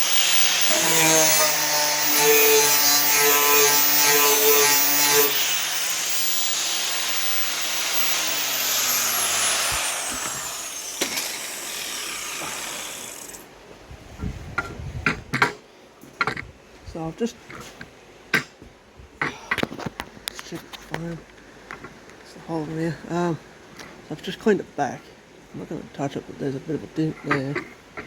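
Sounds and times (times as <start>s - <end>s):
angle grinder grinding steel: 0.0s - 13.4s
grinder motor winding down: 0.0s - 13.4s.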